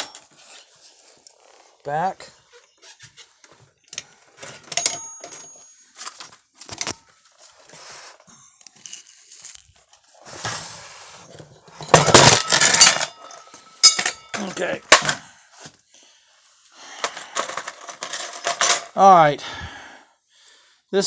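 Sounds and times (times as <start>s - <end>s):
rustling or scraping noise: 0.0s - 4.7s, 5.3s - 13.6s
metal parts clicking and clinking: 3.9s - 7.0s, 8.4s - 10.0s, 11.8s - 15.2s, 17.0s - 19.0s.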